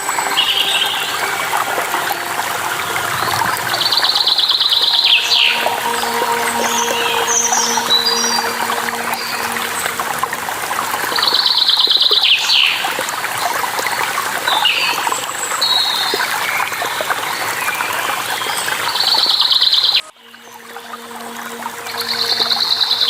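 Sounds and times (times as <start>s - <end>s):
waterfall rushing: 0.0s - 15.8s.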